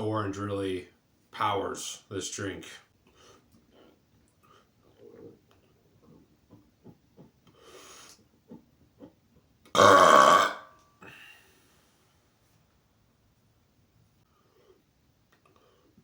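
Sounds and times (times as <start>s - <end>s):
man burping: 9.7s - 10.7s.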